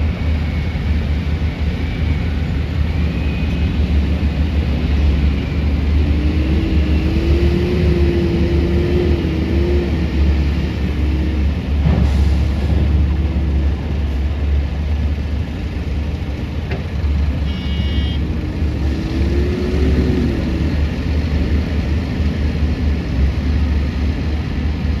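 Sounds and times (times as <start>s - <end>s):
diesel machinery rumbling: 0.0s - 25.0s
short high beep: 17.4s - 18.2s.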